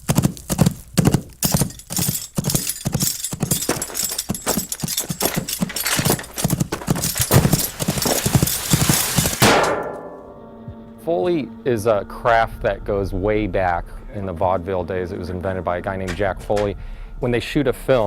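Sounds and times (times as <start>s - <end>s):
horse hooves clip-clopping: 0.0s - 9.6s.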